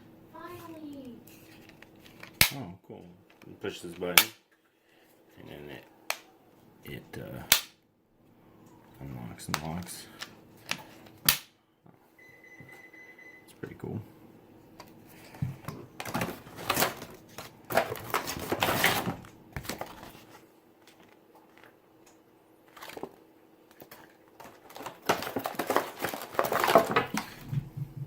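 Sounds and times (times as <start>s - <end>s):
crinkling and rustling: 0.5s - 2.4s, 14.8s - 28.0s.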